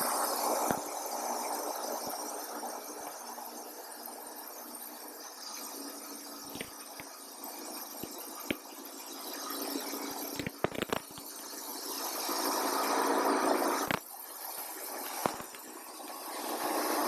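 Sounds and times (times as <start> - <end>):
sharp clicks: 10.3 - 11.3, 15.0 - 15.7.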